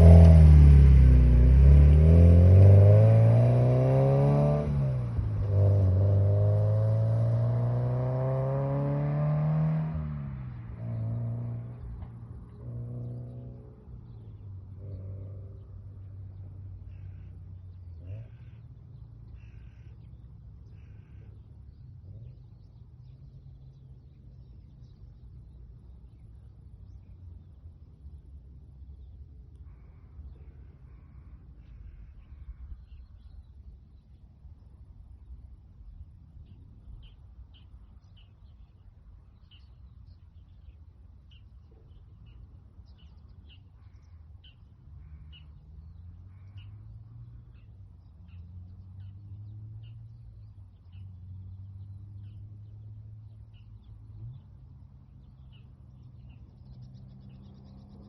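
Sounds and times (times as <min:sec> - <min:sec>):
small birds chirping: 0:15.6 - 0:58.0.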